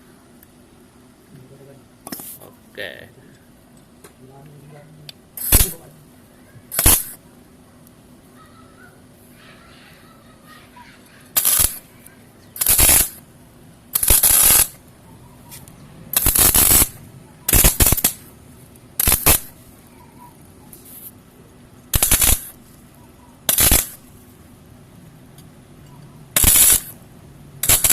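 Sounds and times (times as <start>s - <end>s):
arc welder buzzing: 5.3s - 6.0s, 6.7s - 7.2s, 11.2s - 11.9s, 12.5s - 24.4s, 26.3s - 27.9s.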